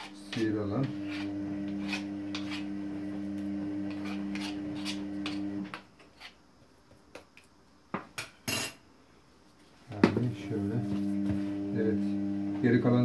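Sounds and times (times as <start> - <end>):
spoon scraping a bowl: 0.0 - 6.4
steady low hum: 10.0 - 13.0.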